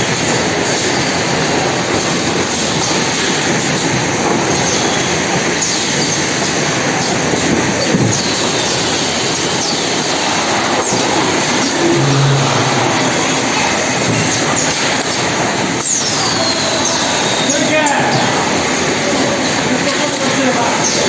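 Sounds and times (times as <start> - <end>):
high squeals dropping in pitch: 10.8 - 14.7.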